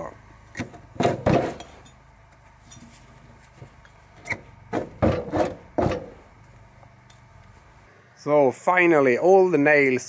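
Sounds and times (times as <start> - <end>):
metal knocking and scraping on wood: 0.5 - 2.0, 2.7 - 6.3.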